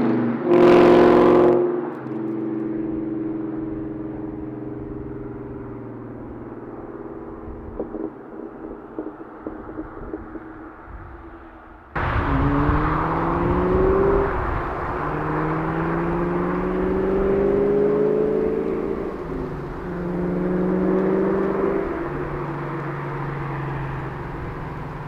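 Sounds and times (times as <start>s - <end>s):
car accelerating: 0.0s - 25.0s
car engine running: 12.0s - 25.0s.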